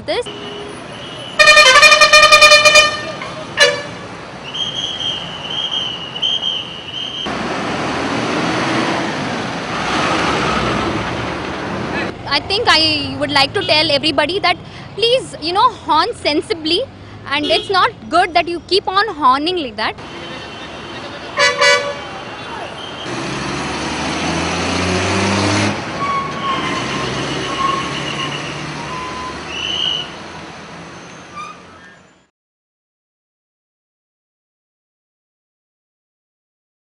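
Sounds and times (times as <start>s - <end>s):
road traffic hiss: 0.3s - 12.3s, 16.3s - 17.7s, 20.0s - 32.2s
heavy vehicle engine droning: 7.3s - 15.0s, 20.0s - 32.2s.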